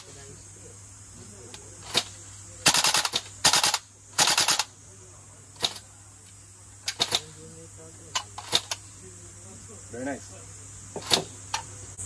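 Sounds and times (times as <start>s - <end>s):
airsoft rifle firing bursts: 1.9s - 4.7s.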